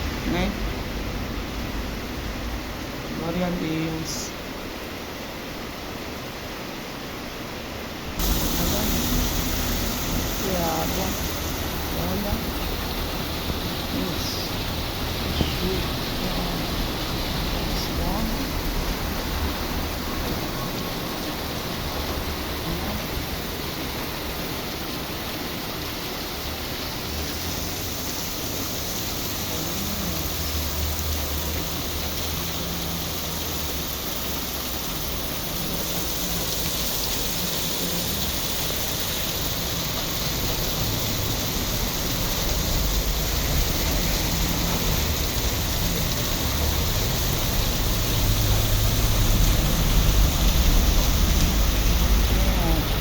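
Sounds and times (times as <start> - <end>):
heavy rain hiss: 0.0 - 53.0
low rumble: 8.2 - 24.8.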